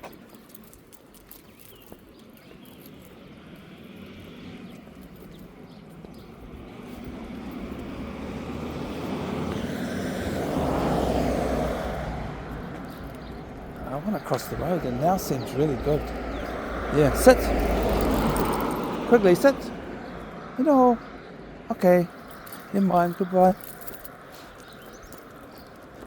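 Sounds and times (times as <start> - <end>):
vehicle passing on road: 0.1 - 26.0.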